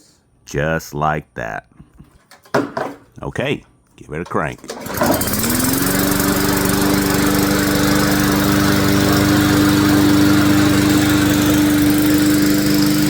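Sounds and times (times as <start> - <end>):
lawn mower engine running: 4.2 - 13.0.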